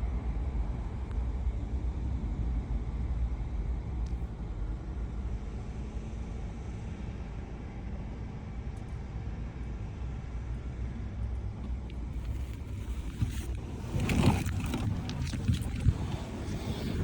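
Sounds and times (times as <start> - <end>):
low rumbling noise: 11.5 - 17.0.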